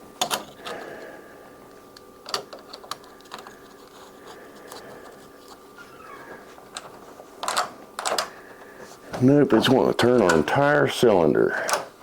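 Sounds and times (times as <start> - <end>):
metallic clicks of lock hardware: 6.8 - 8.3.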